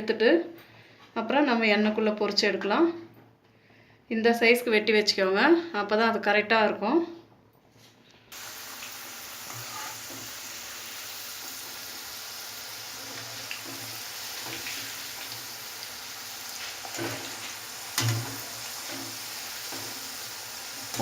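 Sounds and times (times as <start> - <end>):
chips sizzling in hot oil: 8.3 - 21.0.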